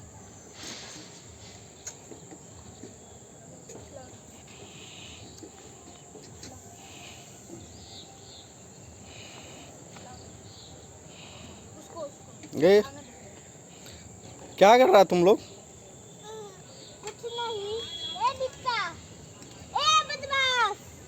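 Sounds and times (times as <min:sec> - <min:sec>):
insects chirring: 0:00.0 - 0:21.0.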